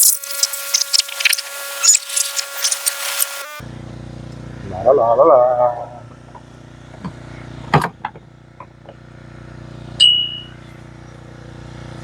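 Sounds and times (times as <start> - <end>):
short high-pitched squeal: 0.0 - 3.6.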